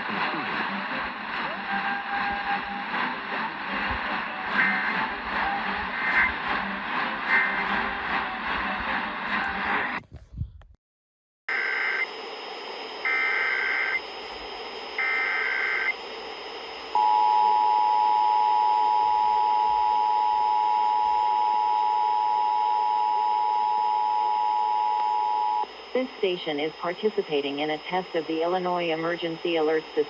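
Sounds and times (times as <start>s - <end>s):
radio hiss: 0.0s - 10.3s, 25.0s - 30.0s.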